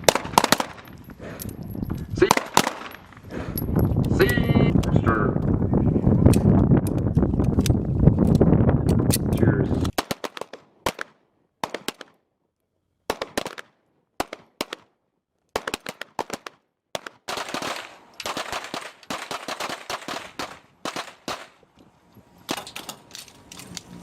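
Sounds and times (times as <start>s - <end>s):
pistol shots echoing: 0.0s - 0.9s, 2.2s - 3.2s, 15.6s - 21.6s.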